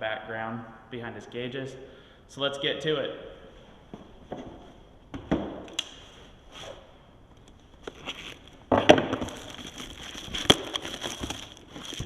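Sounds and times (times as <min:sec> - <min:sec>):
packaging rustling: 0:07.7 - 0:12.0
packaging clicks: 0:09.2 - 0:12.0.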